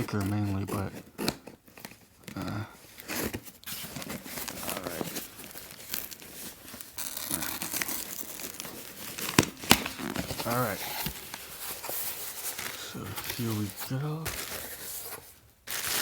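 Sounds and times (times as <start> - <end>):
plastic and paper crinkling and tearing: 0.0 - 16.0.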